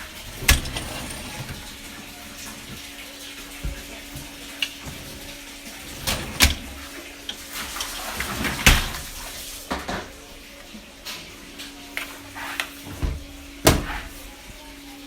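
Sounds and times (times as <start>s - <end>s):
dishes clattering: 0.0s - 7.0s.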